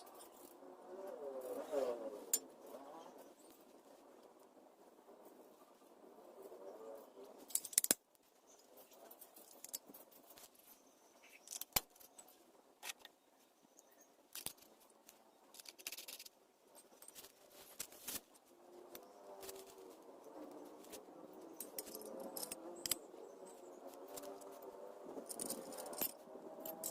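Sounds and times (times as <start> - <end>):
metal tools clinking: 7.5 - 8.0, 21.6 - 23.0, 25.2 - 26.9.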